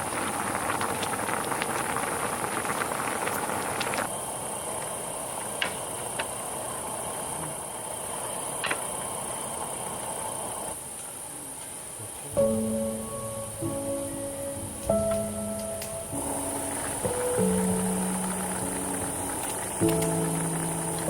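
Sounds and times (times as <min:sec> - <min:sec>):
insects chirring: 0:00.0 - 0:21.0
low rushing hiss: 0:00.0 - 0:21.0
music: 0:12.3 - 0:21.0.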